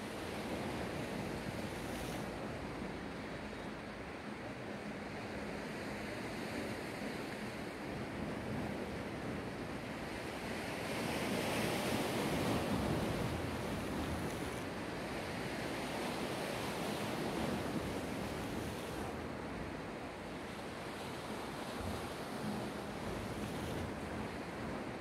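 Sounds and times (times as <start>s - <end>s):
waves breaking on shore: 6.4s - 25.0s.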